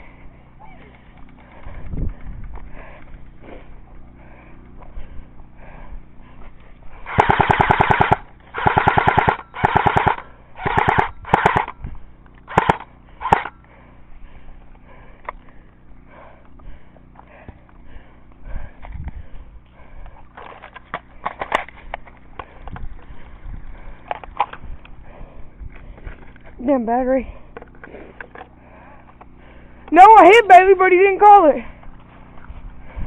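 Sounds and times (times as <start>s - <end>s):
airsoft gun firing on full auto: 7.1s - 11.8s, 12.5s - 13.6s.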